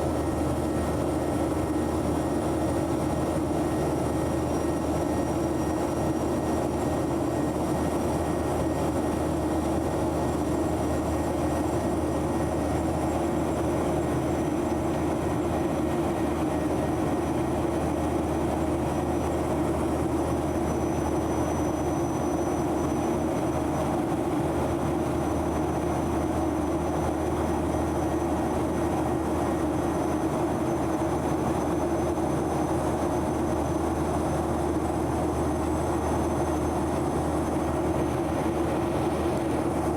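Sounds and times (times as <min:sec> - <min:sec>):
airplane cabin engine and airflow: 0:00.0 - 0:39.9.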